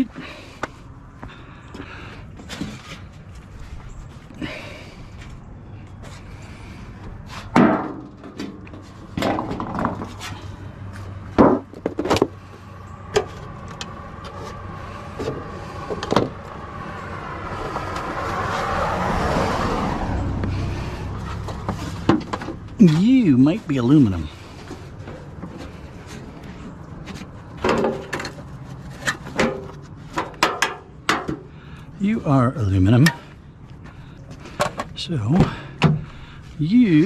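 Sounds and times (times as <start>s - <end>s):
scrap metal knocks and clunks: 7.3s - 12.4s, 21.2s - 23.0s, 24.5s - 31.6s
vehicle passing: 10.0s - 30.1s.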